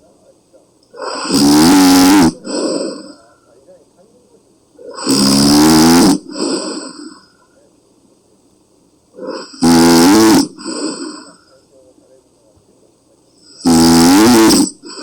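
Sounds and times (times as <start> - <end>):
woman snoring heavily: 1.0 - 3.2, 4.8 - 7.2, 9.2 - 11.4, 13.6 - 15.0.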